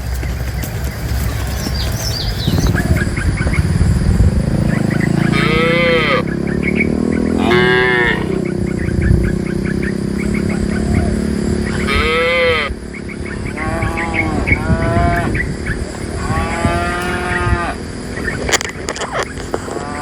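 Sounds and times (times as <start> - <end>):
cattle mooing: 5.1 - 6.4, 7.3 - 8.4, 10.2 - 18.0, 19.0 - 20.0.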